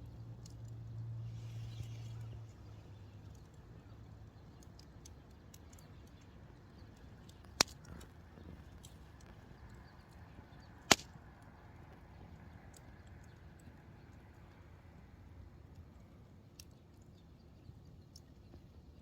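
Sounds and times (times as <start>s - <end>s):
campfire crackling: 0.0s - 19.0s
fire pops: 4.5s - 13.3s.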